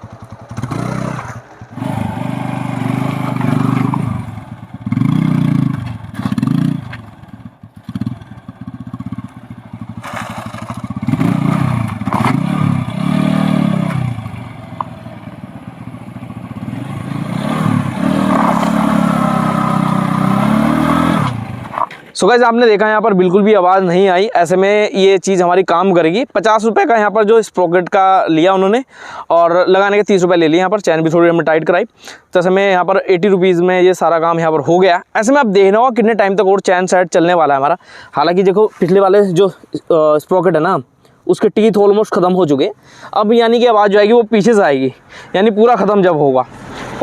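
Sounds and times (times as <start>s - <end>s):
motorcycle engine revving: 0.0s - 21.9s, 45.2s - 47.0s.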